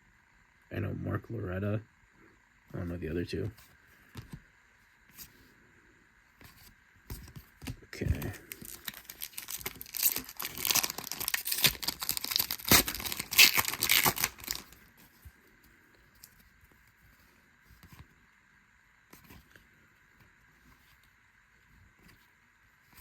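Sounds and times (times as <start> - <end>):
wrapper tearing and crinkling: 8.2 - 14.8.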